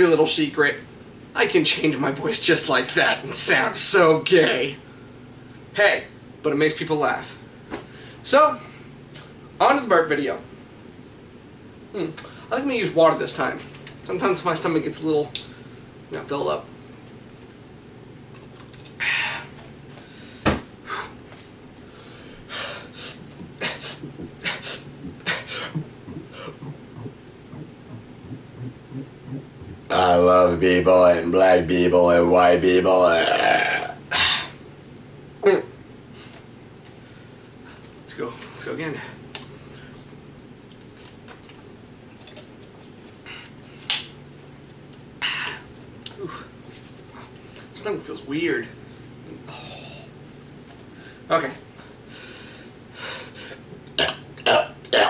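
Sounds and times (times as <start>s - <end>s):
steady low hum: 0.0s - 55.0s
noisy breaths: 7.8s - 9.0s, 19.0s - 29.9s, 50.9s - 53.7s
person gulping water: 23.2s - 29.9s, 33.2s - 34.0s, 41.2s - 42.6s.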